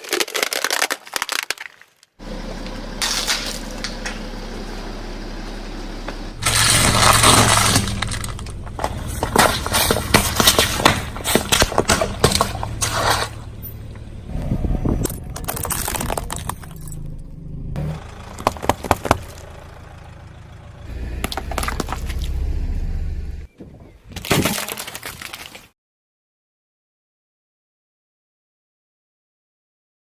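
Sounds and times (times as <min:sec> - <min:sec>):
car tyre crushing brittle objects: 0:00.0 - 0:04.4, 0:06.4 - 0:17.2, 0:17.8 - 0:23.1, 0:24.1 - 0:25.7
low hum of car engine: 0:02.2 - 0:23.5.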